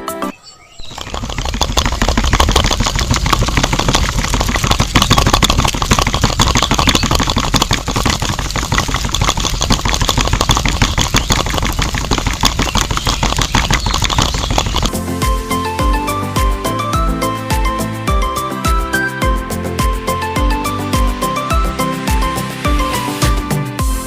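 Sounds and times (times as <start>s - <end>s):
small motor running with clatter: 0.8s - 14.9s.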